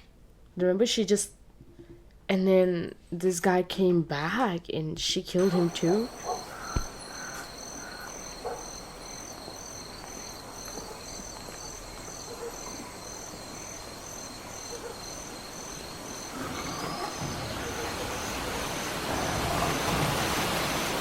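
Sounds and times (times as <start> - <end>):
crickets chirping: 5.4 - 21.0.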